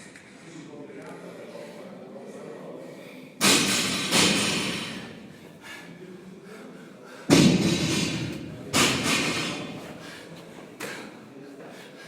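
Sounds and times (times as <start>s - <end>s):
heavy weights thudding on floor: 7.3s - 9.7s.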